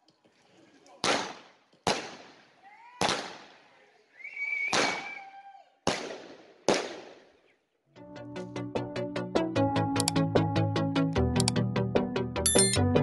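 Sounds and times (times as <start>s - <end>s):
firework whistling: 4.2s - 5.2s.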